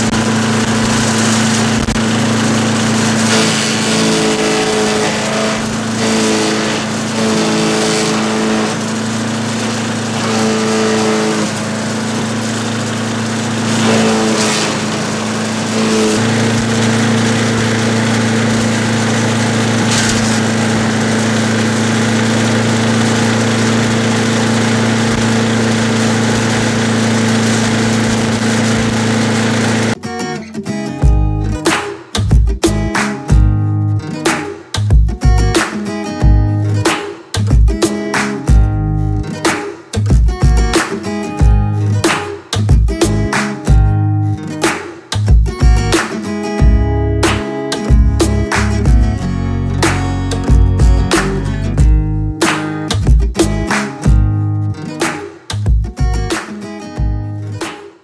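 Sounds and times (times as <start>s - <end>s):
small gas engine running: 0.0s - 30.0s, 44.6s - 54.2s.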